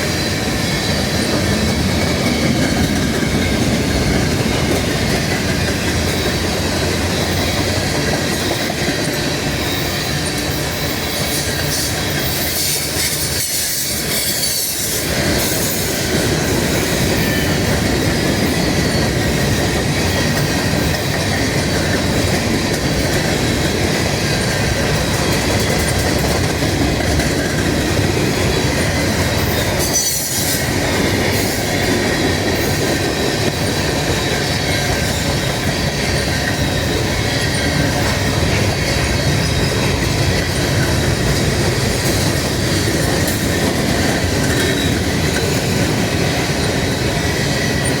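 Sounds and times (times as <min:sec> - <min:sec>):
train cars rumbling on rails: 0:00.0 - 0:48.0.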